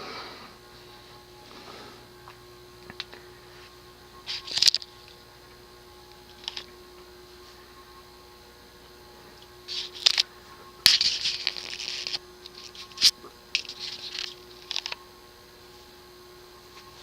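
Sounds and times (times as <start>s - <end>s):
faint hum: 0.0s - 17.0s
scratchy rustling: 9.6s - 15.0s.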